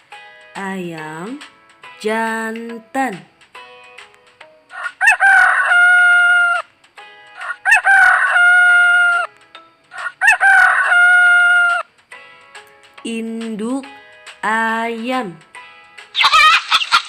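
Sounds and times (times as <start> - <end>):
rooster crowing: 4.7 - 6.6, 7.4 - 9.3, 10.0 - 11.9.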